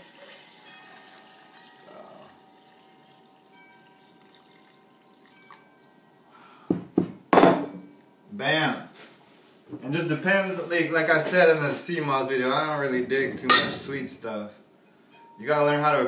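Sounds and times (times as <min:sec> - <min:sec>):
liquid dripping: 0:00.1 - 0:05.9.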